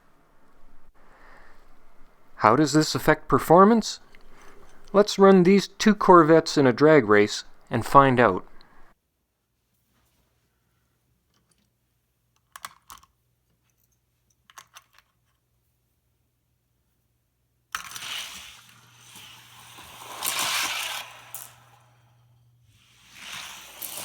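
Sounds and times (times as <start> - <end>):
toy car wheels rolling down track: 17.7 - 24.0.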